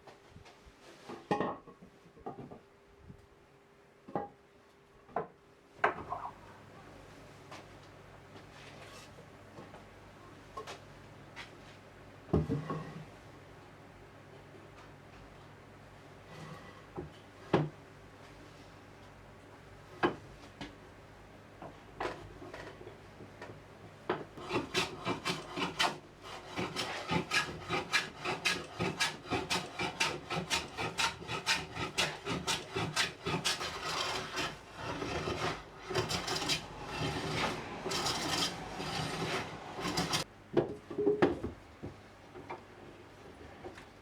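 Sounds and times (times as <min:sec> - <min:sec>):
hand tool working wood: 0:24.4 - 0:40.2.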